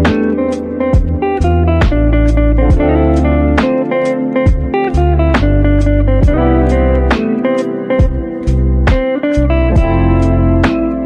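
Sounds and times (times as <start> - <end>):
deep bass line: 0.0 - 0.2, 1.0 - 3.6, 4.5 - 7.2, 8.0 - 11.0
plucked guitar: 0.0 - 11.0.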